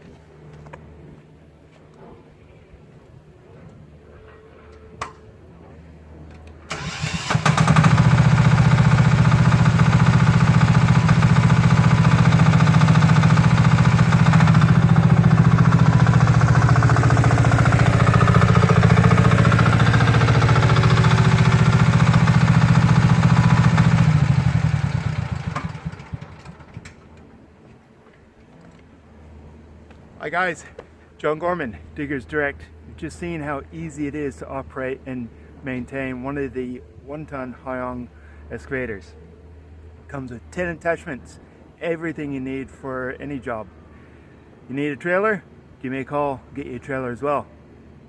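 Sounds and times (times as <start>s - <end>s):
excavator engine running: 6.7s - 27.4s.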